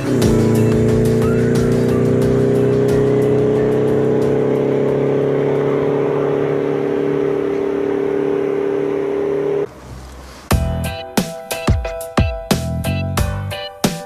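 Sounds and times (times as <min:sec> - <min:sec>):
motor engine humming: 0:00.0 - 0:10.7.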